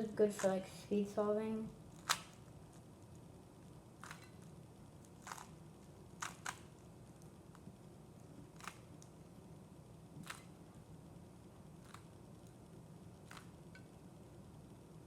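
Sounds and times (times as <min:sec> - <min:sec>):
plastic cube clicks: 0:02.0 - 0:02.4, 0:06.2 - 0:06.7, 0:08.6 - 0:08.9.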